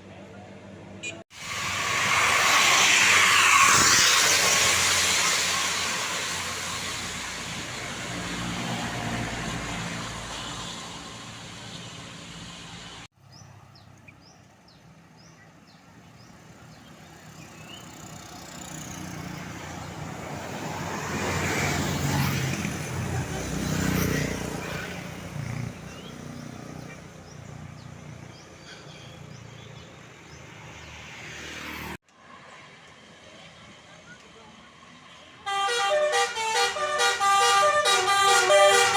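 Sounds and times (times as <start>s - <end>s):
road noise of approaching vehicle: 0.0s - 38.9s
vehicle passing by: 1.4s - 13.1s, 16.2s - 32.0s.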